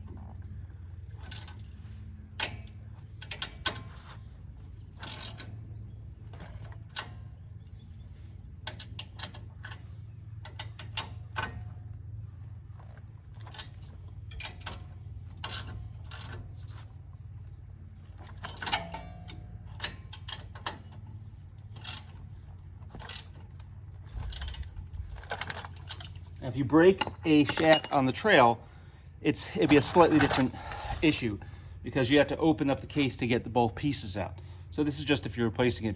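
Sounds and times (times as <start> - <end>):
steady low hum: 0.0 - 35.9
tools and metal parts clinking: 1.2 - 5.6, 6.2 - 7.8, 12.9 - 16.9, 18.1 - 28.2, 29.5 - 31.3.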